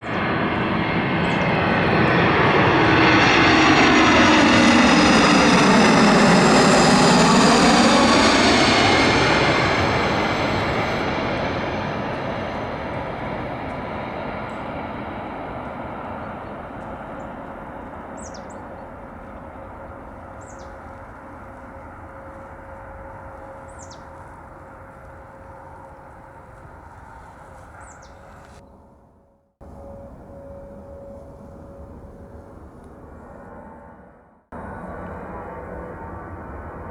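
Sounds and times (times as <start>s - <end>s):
jet passing close by: 0.0s - 28.6s, 29.6s - 36.9s.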